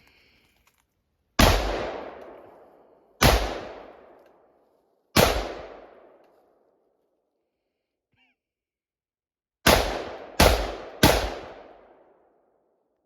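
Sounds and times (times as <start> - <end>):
gunshots with echoing tail: 1.4 - 4.2, 5.1 - 6.2, 9.6 - 12.2.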